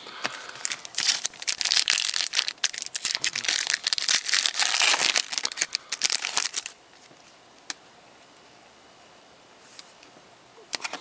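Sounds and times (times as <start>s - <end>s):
foil wrapper crinkling: 0.1s - 6.8s.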